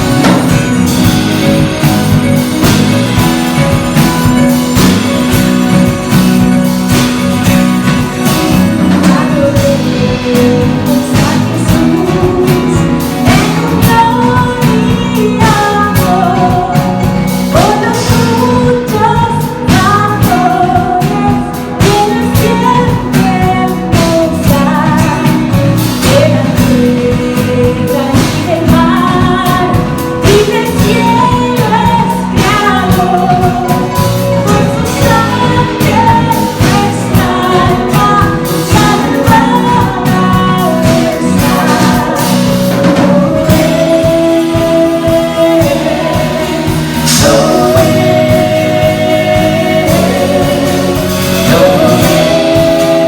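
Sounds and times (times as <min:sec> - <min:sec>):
steady beat: 0:00.0 - 0:13.0
bass: 0:00.0 - 0:53.0
guitar: 0:00.0 - 0:53.0
singers singing a hymn: 0:05.8 - 0:53.0.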